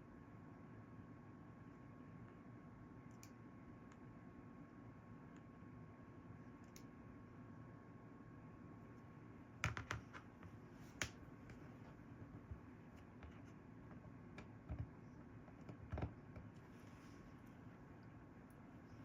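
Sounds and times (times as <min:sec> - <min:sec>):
light clicks of small tools: 0:03.0 - 0:04.1, 0:06.6 - 0:07.0.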